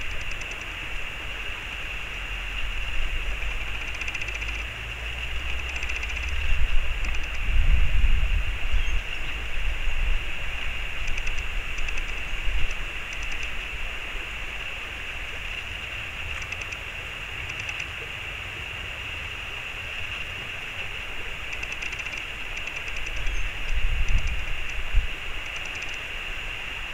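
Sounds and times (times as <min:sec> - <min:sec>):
high ticking trills: 0:00.0 - 0:00.9, 0:03.4 - 0:07.5, 0:11.0 - 0:13.7, 0:16.3 - 0:16.8, 0:17.4 - 0:17.9, 0:21.4 - 0:26.1
stream water flowing: 0:00.0 - 0:26.9.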